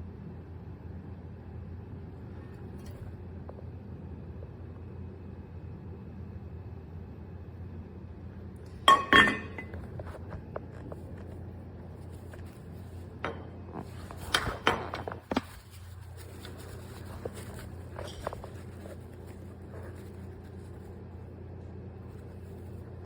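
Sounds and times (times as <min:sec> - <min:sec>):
steady low hum: 0:00.0 - 0:23.0
kitchenware clinking: 0:08.8 - 0:09.9, 0:13.2 - 0:15.3.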